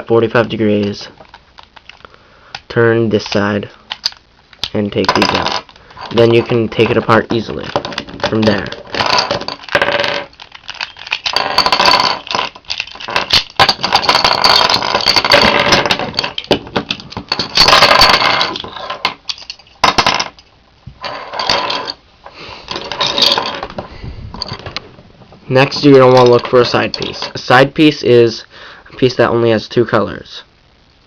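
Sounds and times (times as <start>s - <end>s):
plastic puzzle pieces clicking: 0.4s - 6.2s, 6.8s - 19.6s.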